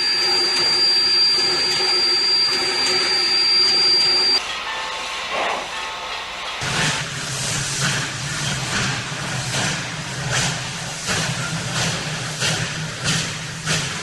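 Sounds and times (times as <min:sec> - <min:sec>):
steam locomotive whistle blast: 0:00.0 - 0:07.0
steam hissing: 0:00.0 - 0:14.0.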